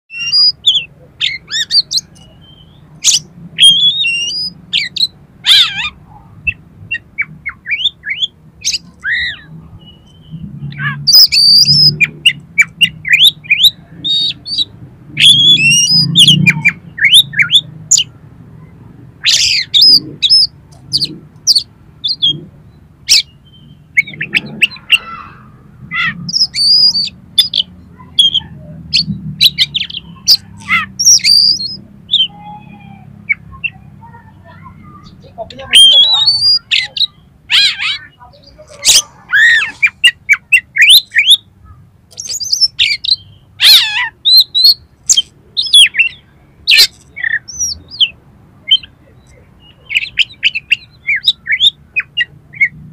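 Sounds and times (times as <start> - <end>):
bird singing whistled notes: 0.1 - 5.7, 6.9 - 18.1, 23.1 - 25.2, 26.3 - 28.4, 29.0 - 32.4, 35.8 - 37.7, 42.1 - 52.8.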